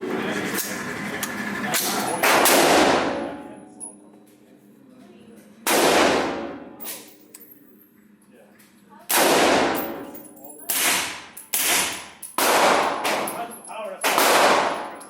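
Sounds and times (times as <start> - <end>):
gunshots with ringing decay: 2.2 - 3.4, 5.7 - 6.7, 9.1 - 13.4, 14.0 - 15.0.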